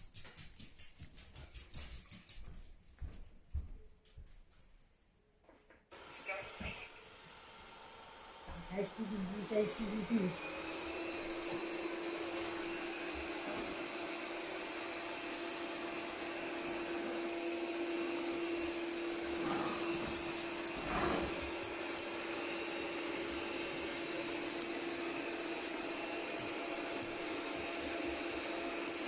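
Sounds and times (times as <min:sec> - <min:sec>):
floor washer motor humming: 0:05.9 - 0:29.0.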